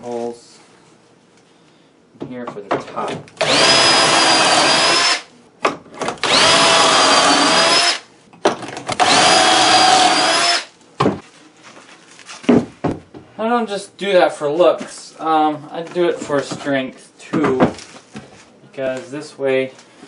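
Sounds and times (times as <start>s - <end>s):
power drill whining: 3.4s - 5.3s, 6.2s - 8.0s, 8.9s - 10.7s.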